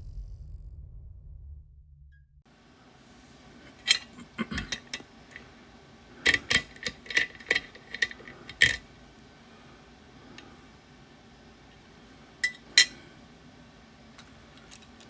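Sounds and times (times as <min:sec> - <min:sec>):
metal lock picking clicks: 0:03.8 - 0:05.4, 0:06.2 - 0:08.8.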